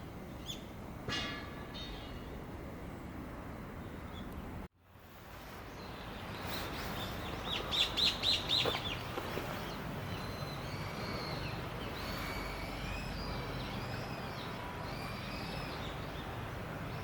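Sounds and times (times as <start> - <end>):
background noise: 0.0 - 17.0
bird chirping: 5.7 - 17.0.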